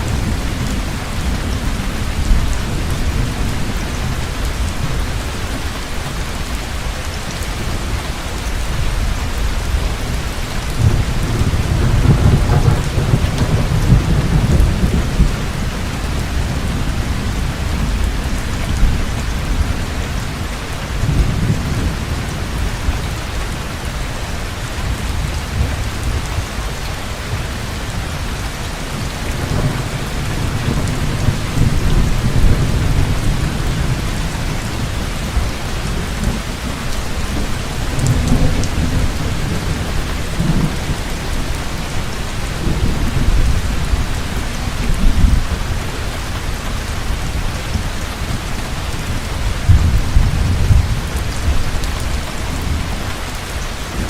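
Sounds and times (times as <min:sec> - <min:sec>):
heavy rain pouring: 0:00.0 - 0:54.0
rolling thunder: 0:09.0 - 0:20.2, 0:28.9 - 0:46.4, 0:49.0 - 0:53.3.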